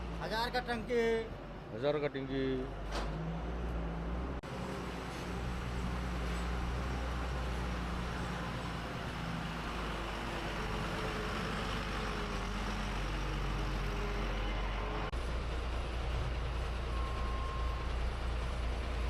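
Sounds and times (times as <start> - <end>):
road noise: 0.0 - 19.0
truck engine running: 4.5 - 19.0.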